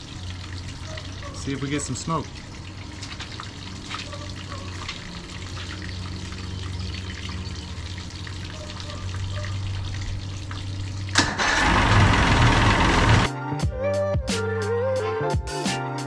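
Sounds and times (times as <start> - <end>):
water churning and splashing: 0.0 - 13.2
loud engine sound: 11.2 - 13.3
outboard motor idling: 11.5 - 13.3.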